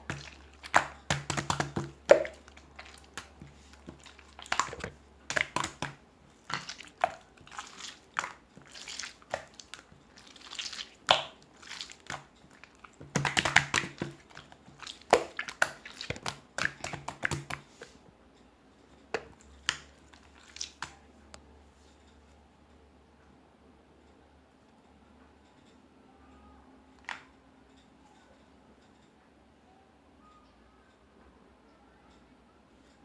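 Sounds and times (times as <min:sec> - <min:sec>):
slime squeezed by hand: 0:00.0 - 0:17.8.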